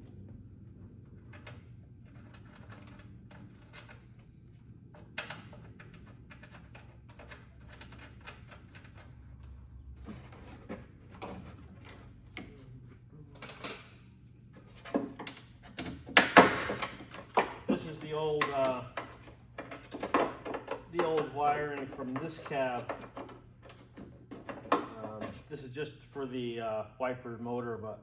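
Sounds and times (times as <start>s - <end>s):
steady low hum: 0.0s - 28.0s
wiring clicks and rustles: 14.6s - 26.3s.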